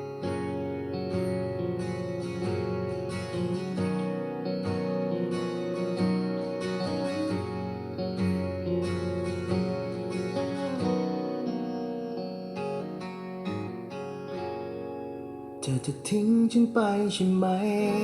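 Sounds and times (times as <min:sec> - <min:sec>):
acoustic guitar music from speaker: 0:00.0 - 0:18.0.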